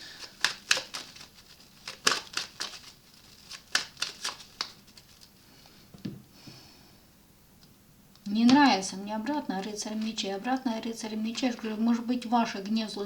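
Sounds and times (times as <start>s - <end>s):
cards snapping and flicking: 0.0s - 5.3s.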